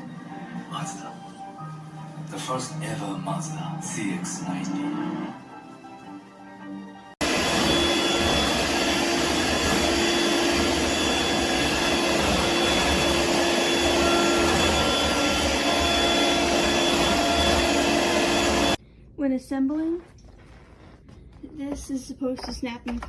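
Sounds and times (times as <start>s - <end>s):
stick vacuum running: 7.2s - 18.8s.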